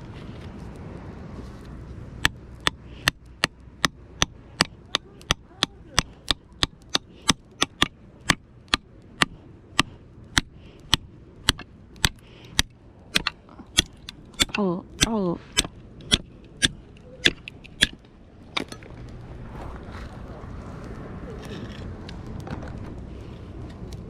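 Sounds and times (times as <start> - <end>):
sharp knocks: 2.2 - 18.0.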